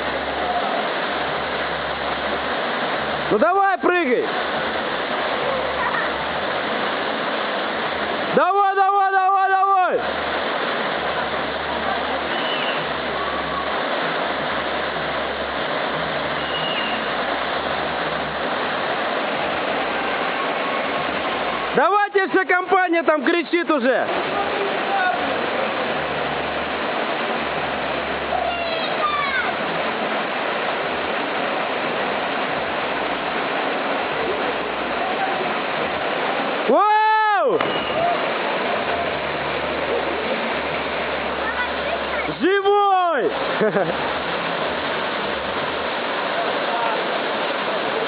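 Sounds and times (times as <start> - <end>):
waterfall rushing: 0.0 - 48.0
faint high note: 37.6 - 38.2.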